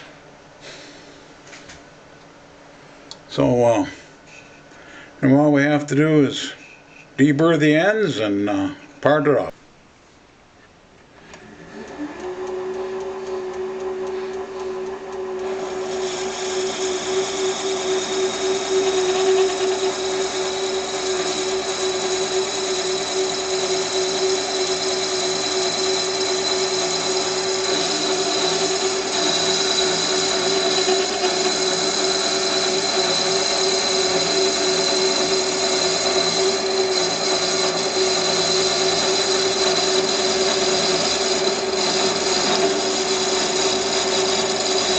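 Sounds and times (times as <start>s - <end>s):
lathe motor running: 11.7s - 44.9s
high-pitched cutting whine: 12.3s - 44.9s.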